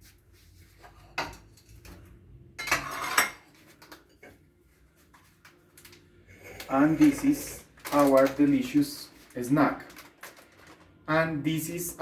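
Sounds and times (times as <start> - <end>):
chip packet crinkling: 5.5 - 11.2.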